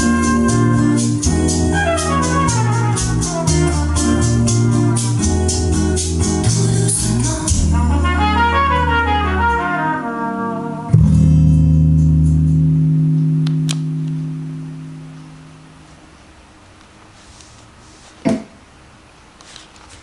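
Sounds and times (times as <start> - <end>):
final chord over heavy bass: 0.0 - 15.9
recorded music through speakers: 0.0 - 16.2.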